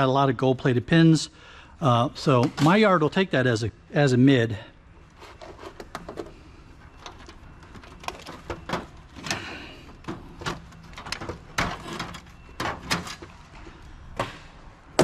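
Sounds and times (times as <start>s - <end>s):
computer parts clicking and knocking: 6.9s - 13.4s.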